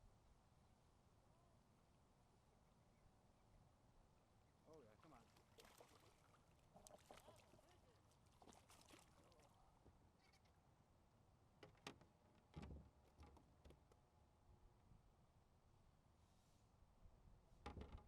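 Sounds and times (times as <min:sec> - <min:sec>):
faint distant voices: 0:04.6 - 0:09.9.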